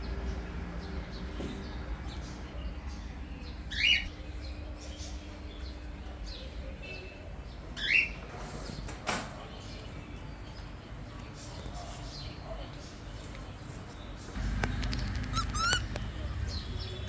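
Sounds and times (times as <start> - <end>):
small birds chirping: 0.0 - 17.0
downward sweeping bird calls: 14.3 - 17.0
low steady hum: 14.3 - 17.0.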